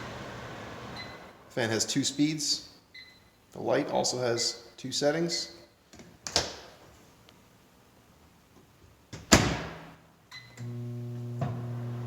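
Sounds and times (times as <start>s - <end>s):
microwave beep: 1.0s - 1.3s, 3.0s - 3.2s, 10.4s - 12.0s
microwave humming: 10.4s - 12.0s.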